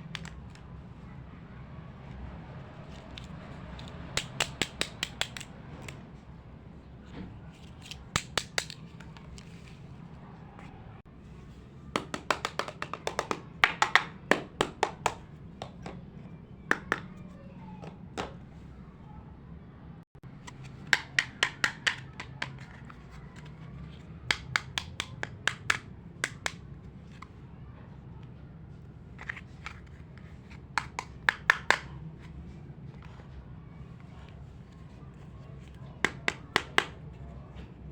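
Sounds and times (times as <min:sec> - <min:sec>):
plastic toy blocks clicking: 0:00.1 - 0:00.6, 0:02.9 - 0:06.0, 0:12.0 - 0:16.0, 0:20.8 - 0:26.6.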